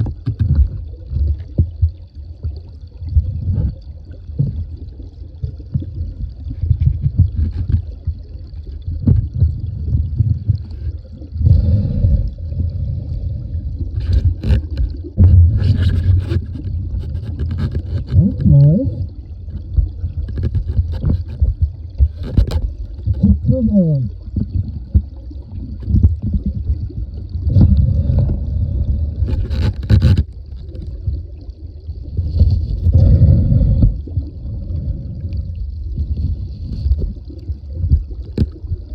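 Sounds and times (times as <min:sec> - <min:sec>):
wavering bubbling: 0:09.2 - 0:20.4, 0:21.6 - 0:29.4
creek water splashing and gurgling: 0:13.8 - 0:33.1
sharp knocks and clicks: 0:20.2 - 0:21.4.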